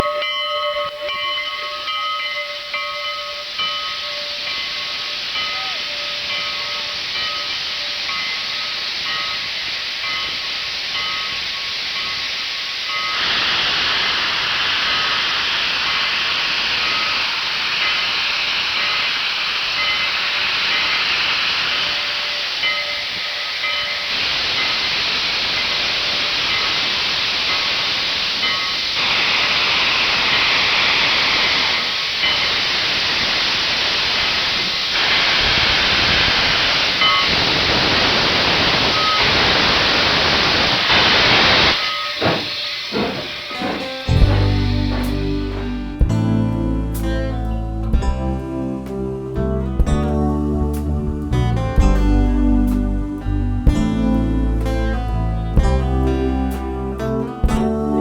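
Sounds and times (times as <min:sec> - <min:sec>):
steam train hissing: 0:00.0 - 0:46.2.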